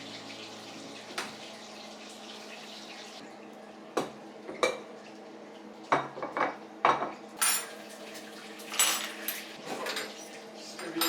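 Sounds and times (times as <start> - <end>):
dishes and cutlery clattering: 6.0 - 7.9, 8.6 - 10.2, 10.8 - 11.0.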